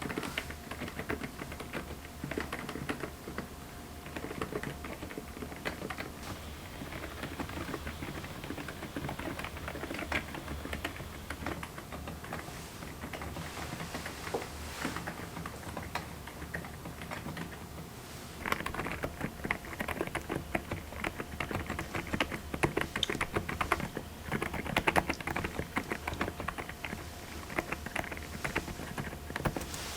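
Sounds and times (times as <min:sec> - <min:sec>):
muted keyboard keystrokes: 0:00.0 - 0:13.8, 0:18.4 - 0:29.8.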